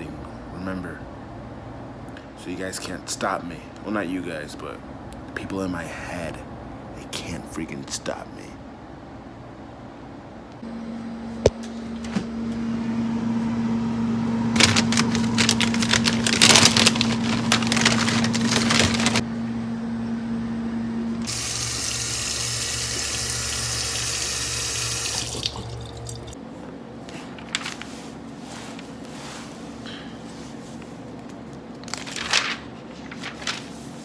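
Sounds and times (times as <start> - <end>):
tap water running into sink: 21.3 - 26.4.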